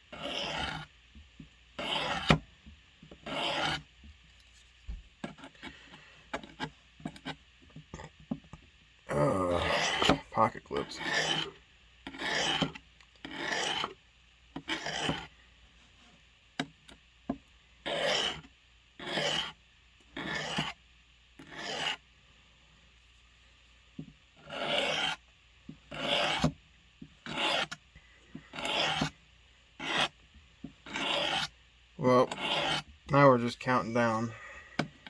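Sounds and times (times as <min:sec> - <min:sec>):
blade rasping on abrasive: 0:00.1 - 0:00.9, 0:01.8 - 0:02.4, 0:03.2 - 0:03.9, 0:09.6 - 0:10.2, 0:10.9 - 0:11.5, 0:12.1 - 0:13.9, 0:14.7 - 0:15.3, 0:17.9 - 0:19.6, 0:20.2 - 0:20.8, 0:21.4 - 0:22.0, 0:24.4 - 0:25.2, 0:25.9 - 0:26.5, 0:27.2 - 0:27.8, 0:28.5 - 0:29.1, 0:29.8 - 0:30.2, 0:30.9 - 0:34.2.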